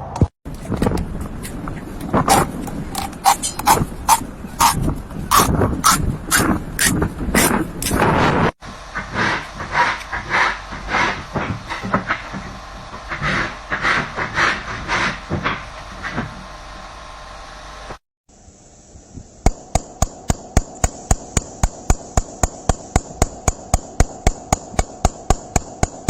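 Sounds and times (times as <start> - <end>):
irregular scraping: 0.5 - 16.4
hissing bursts: 1.3 - 16.2, 18.3 - 26.0
rapid sharp knocks: 19.5 - 26.0.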